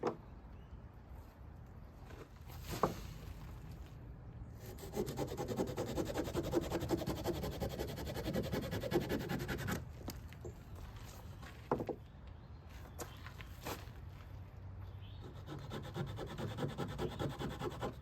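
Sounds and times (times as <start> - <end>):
knife blade rasping on wood: 4.7 - 9.8, 15.3 - 18.0.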